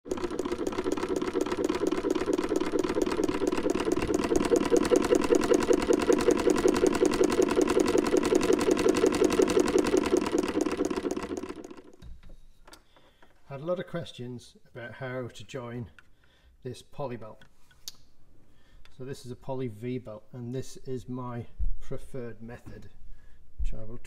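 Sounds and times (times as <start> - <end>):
sewing machine running: 0.0 - 12.0.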